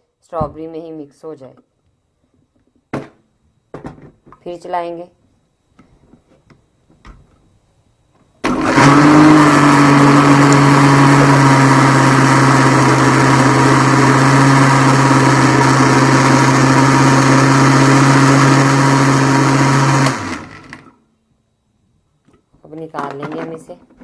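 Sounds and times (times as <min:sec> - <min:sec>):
electric blender motor running: 0:08.4 - 0:21.0.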